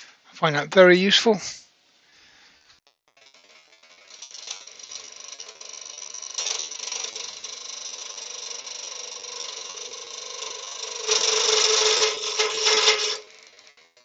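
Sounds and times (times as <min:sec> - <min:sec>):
chisel scraping spinning wood: 0:03.1 - 0:14.0
lathe humming: 0:03.3 - 0:14.0.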